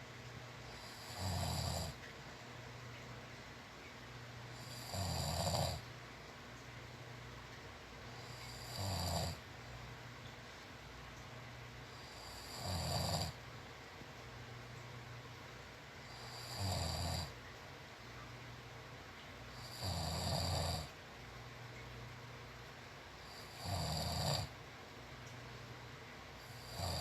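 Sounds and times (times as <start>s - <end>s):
person snoring loudly: 0.8s - 2.0s, 4.6s - 5.8s, 8.2s - 9.4s, 12.0s - 13.4s, 16.1s - 17.3s, 19.6s - 20.9s, 23.3s - 24.5s, 26.5s - 27.0s.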